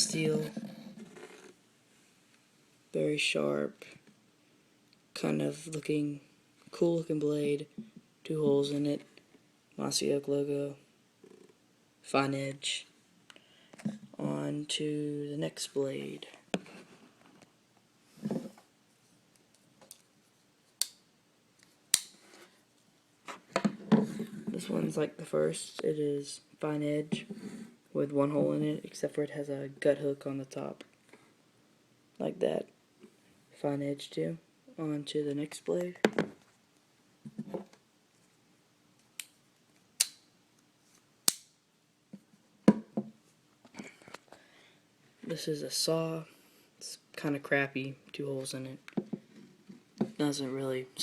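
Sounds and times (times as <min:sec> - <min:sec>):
folding blade clicking open: 0:41.3 - 0:41.5.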